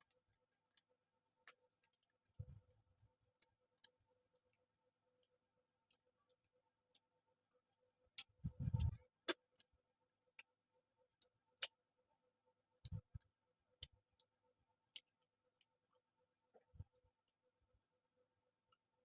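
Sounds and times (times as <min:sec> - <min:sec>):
soft low thumps: 0:08.4 - 0:09.0.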